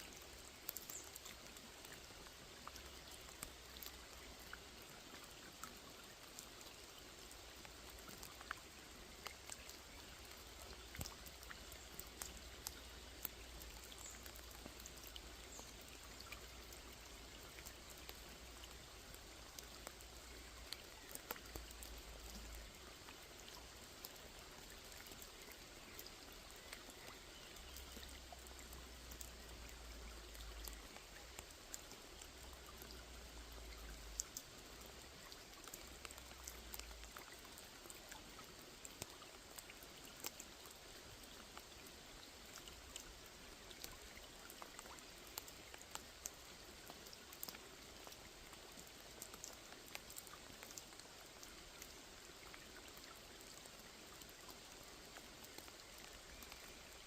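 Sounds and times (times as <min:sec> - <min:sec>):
rain falling on a lake: 0:00.0 - 0:57.0.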